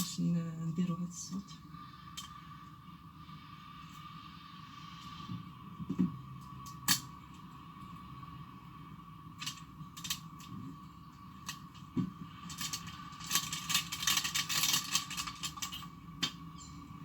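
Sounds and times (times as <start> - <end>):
plastic wrapping crinkling: 12.5 - 15.9.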